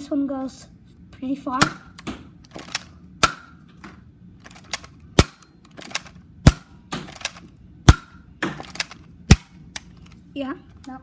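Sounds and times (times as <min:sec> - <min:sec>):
toy blaster snapping and clicking: 0:01.9 - 0:03.4, 0:04.4 - 0:07.5, 0:08.5 - 0:10.2.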